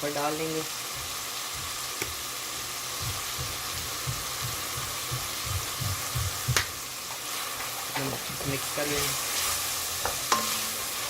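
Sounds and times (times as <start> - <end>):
food sizzling in oil: 0.0 - 11.0
spoon stirring in a pot: 7.0 - 11.0.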